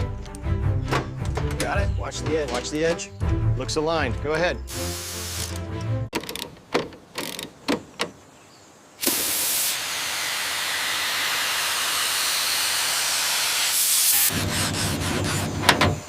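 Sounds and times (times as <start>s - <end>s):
loud spraying hiss: 4.7s - 5.6s, 9.0s - 14.9s.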